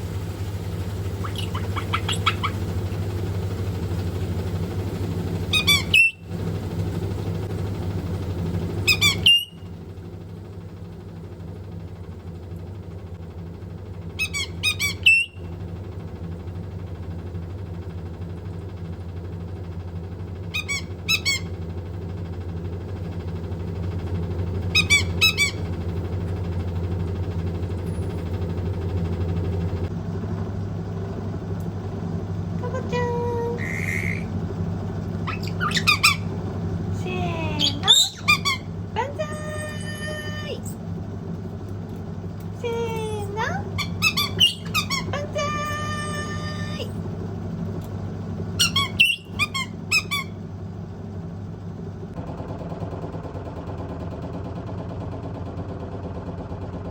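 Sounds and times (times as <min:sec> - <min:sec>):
washing machine humming: 0:00.0 - 0:56.9
parrot squeaky calls: 0:01.0 - 0:02.7, 0:05.5 - 0:06.2, 0:08.8 - 0:09.6, 0:14.2 - 0:15.5, 0:20.5 - 0:21.5, 0:24.7 - 0:25.7, 0:33.6 - 0:34.3, 0:35.2 - 0:36.4, 0:37.5 - 0:38.7, 0:43.6 - 0:46.9, 0:48.6 - 0:50.4.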